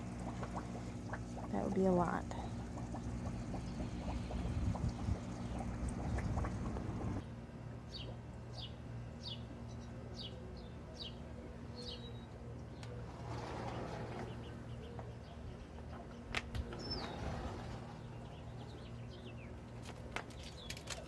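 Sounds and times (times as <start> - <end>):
low rumbling noise: 0.0 - 7.3, 12.6 - 19.8.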